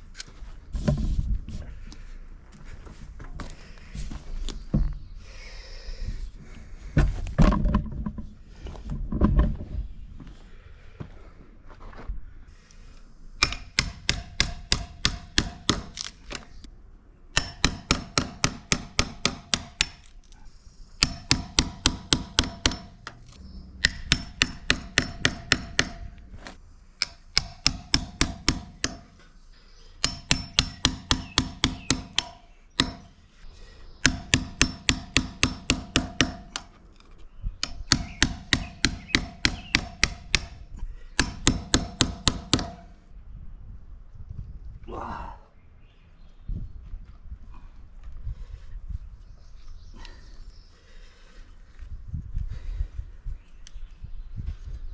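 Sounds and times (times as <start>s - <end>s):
hammer blows on metal: 30.0s - 33.2s, 37.6s - 43.0s.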